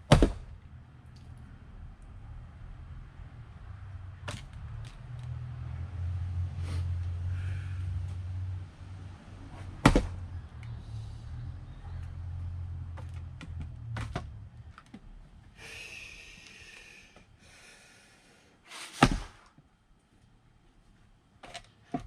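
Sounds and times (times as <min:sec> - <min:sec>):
axe striking wood: 0:00.0 - 0:00.6, 0:09.8 - 0:10.2, 0:19.0 - 0:19.5
short hissing sounds: 0:18.7 - 0:19.0.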